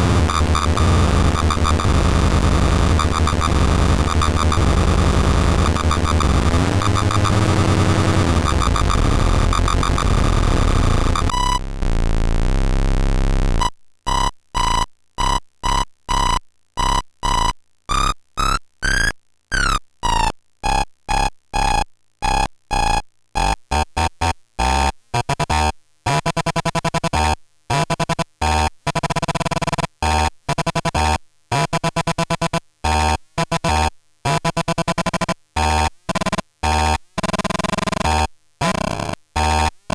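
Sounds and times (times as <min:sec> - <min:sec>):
low synthesizer pulses: 0:00.0 - 0:13.6
buzzy square-wave synthesizer tones: 0:00.0 - 0:13.7, 0:17.4 - 0:39.9.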